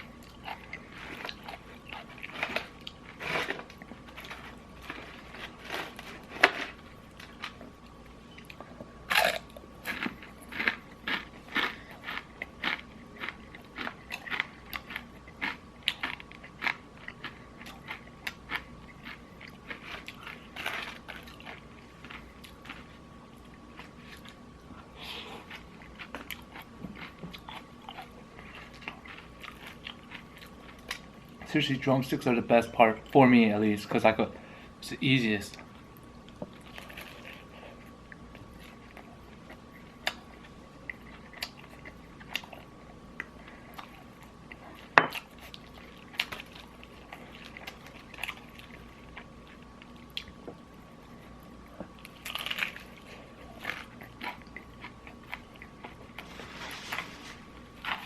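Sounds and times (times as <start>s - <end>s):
crunching fried chicken: 0.0s - 7.9s, 8.5s - 31.6s, 38.3s - 58.0s
quiet chewing: 0.0s - 31.6s, 35.5s - 58.0s.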